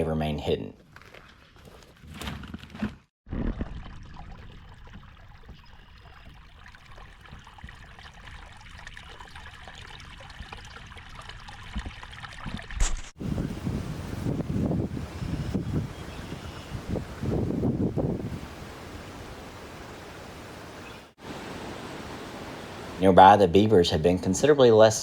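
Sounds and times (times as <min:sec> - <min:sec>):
water trickling: 0:03.6 - 0:12.8.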